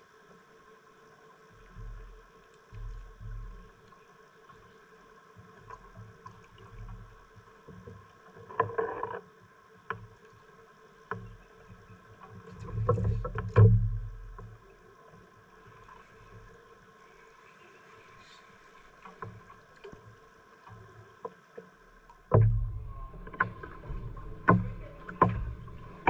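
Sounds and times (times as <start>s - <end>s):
faint steady hum: 0.0s - 26.0s
knocks and bumps in a boat: 1.8s - 3.8s, 11.1s - 14.7s, 22.2s - 26.0s.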